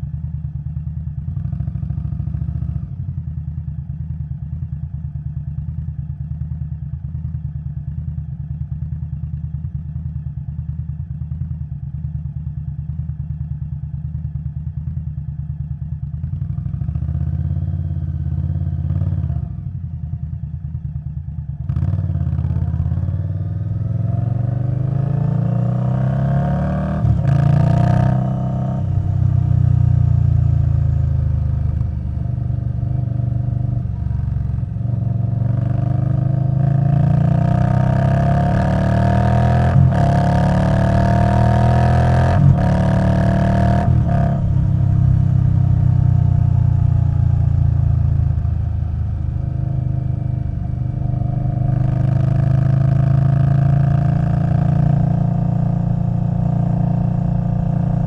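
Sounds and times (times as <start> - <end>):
motorcycle engine revving: 21.5 - 58.0.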